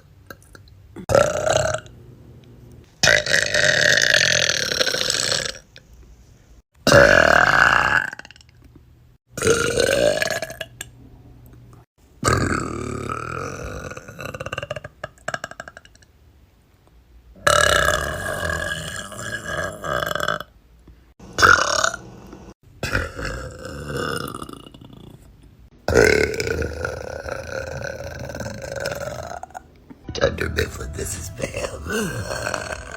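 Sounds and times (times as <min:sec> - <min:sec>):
woman burping: 0:31.6 - 0:32.9.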